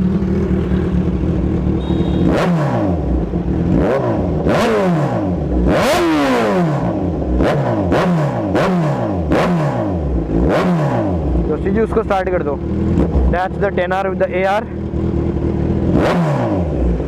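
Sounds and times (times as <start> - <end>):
motorcycle engine revving: 0.0 - 17.0.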